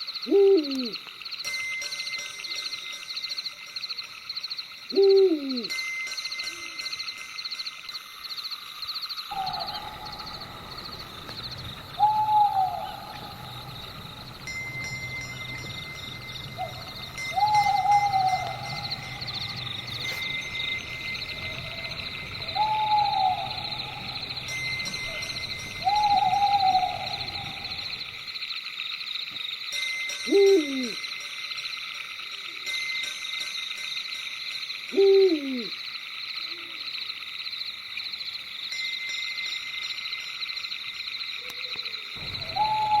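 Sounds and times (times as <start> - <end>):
crickets chirping: 0.0 - 43.0
owl hooting: 0.2 - 1.0, 4.9 - 5.7, 9.3 - 28.2, 30.3 - 31.0, 34.9 - 35.7, 42.2 - 43.0.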